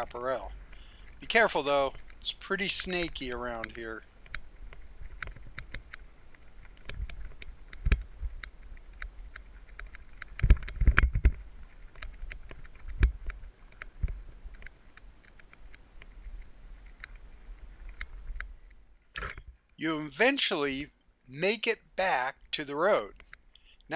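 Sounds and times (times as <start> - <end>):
mountain bike rattling and clicking: 3.4 - 15.4.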